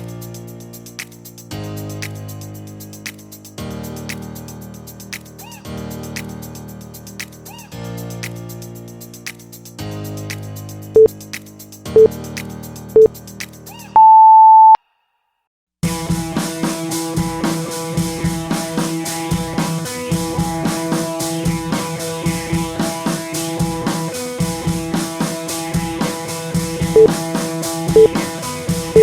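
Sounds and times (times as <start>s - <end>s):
electronic timer beep: 14.0s - 14.8s, 28.0s - 28.2s
rock music with drums and guitar: 15.8s - 29.0s.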